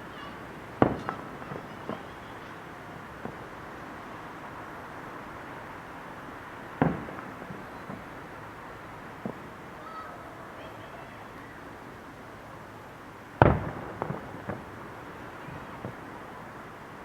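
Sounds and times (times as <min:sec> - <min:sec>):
fireworks booming: 0:00.0 - 0:09.8, 0:13.3 - 0:17.0
fireworks bangs: 0:00.0 - 0:11.8, 0:13.3 - 0:17.0
faint firework pop: 0:00.8 - 0:02.0.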